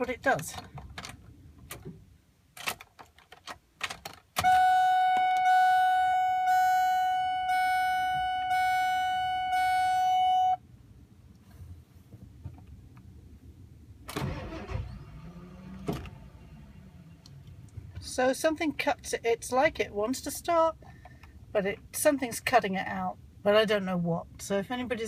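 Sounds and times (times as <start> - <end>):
dashboard warning chime dinging: 4.4 - 10.6
rustling noise: 11.4 - 12.8.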